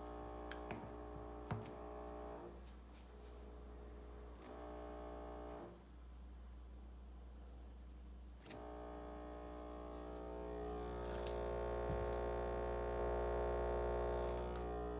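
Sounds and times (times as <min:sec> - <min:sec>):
refrigerator humming: 0:09.7 - 0:14.9.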